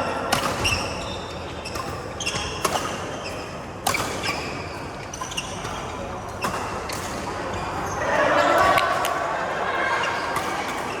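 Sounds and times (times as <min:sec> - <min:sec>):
racket hitting shuttlecock: 0:00.2 - 0:09.4, 0:10.1 - 0:11.0
shoes squeaking on court floor: 0:00.3 - 0:09.3, 0:09.9 - 0:11.0.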